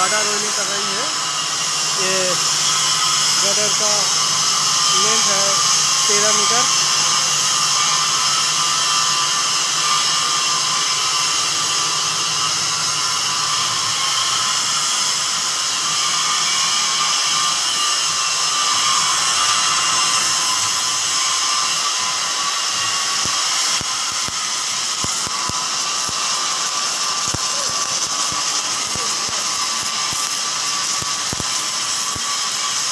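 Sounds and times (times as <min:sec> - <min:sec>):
welding machine hiss and whine: 0:00.0 - 0:32.9.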